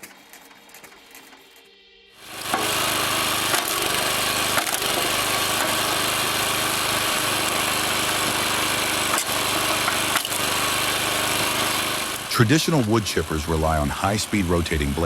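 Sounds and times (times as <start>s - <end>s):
wood-processing machine running: 2.2s - 15.0s
wood cracking and splintering: 3.4s - 6.1s, 7.0s - 12.4s.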